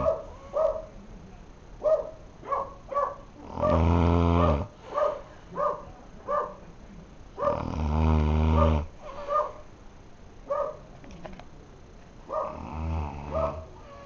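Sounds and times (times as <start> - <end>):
man snoring: 3.4 - 4.7, 7.5 - 8.9, 12.5 - 14.0.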